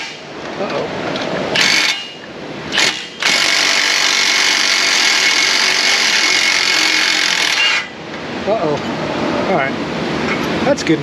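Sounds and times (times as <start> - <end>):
handheld power tool running: 1.6 - 2.0, 2.8 - 7.9.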